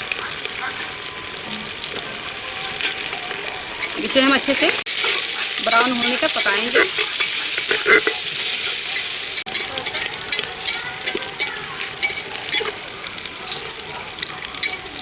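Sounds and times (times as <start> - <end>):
onion sizzling in hot fat: 0.0 - 15.0
spoon scraping and clicking: 2.8 - 4.1, 5.9 - 15.0.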